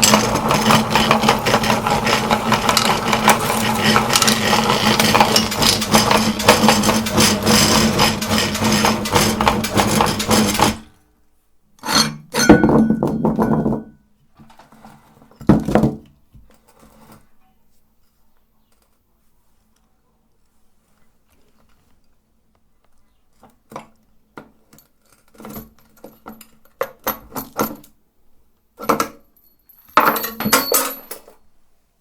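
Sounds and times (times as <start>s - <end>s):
electric meat grinder motor hum: 0.0s - 10.8s
hard candy crushing: 0.0s - 10.9s.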